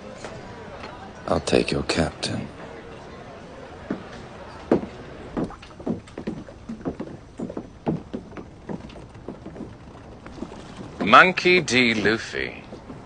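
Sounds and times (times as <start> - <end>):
water lapping against boat hull: 4.7 - 11.4.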